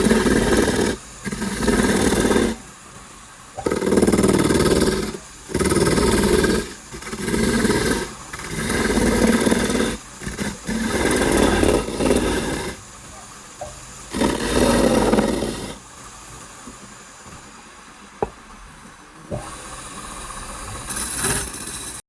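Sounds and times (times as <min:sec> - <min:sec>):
power tool cutting wood: 0:00.0 - 0:02.7, 0:03.6 - 0:12.9, 0:14.0 - 0:15.9.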